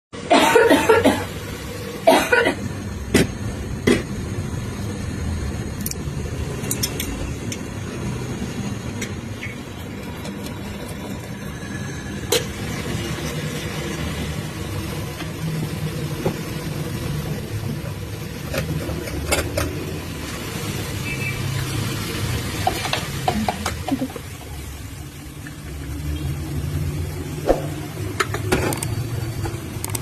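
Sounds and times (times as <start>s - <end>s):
person coughing: 0.3s - 1.3s, 2.1s - 2.6s.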